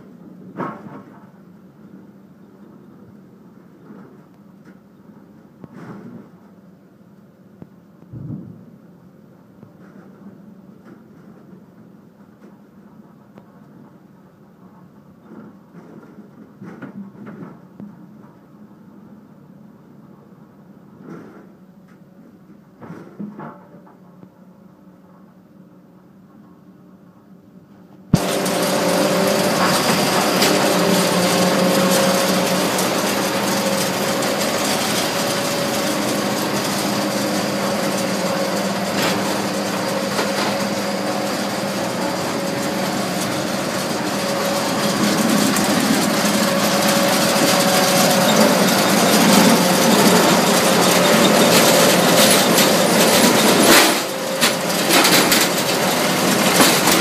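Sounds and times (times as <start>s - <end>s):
debarker machine running: 28.2s - 57.0s.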